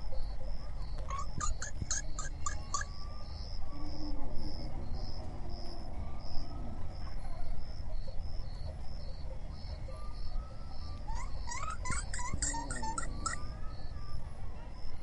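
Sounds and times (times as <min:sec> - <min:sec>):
insect chirping in high pulses: 0:01.1 - 0:03.6, 0:10.1 - 0:14.0.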